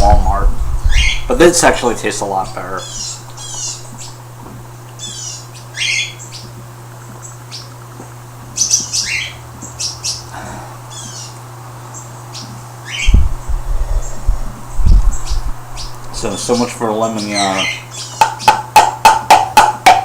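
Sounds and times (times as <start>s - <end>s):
steady low hum: 0.0s - 20.0s
small bird chirping: 0.7s - 1.4s, 2.8s - 4.2s, 4.9s - 18.6s.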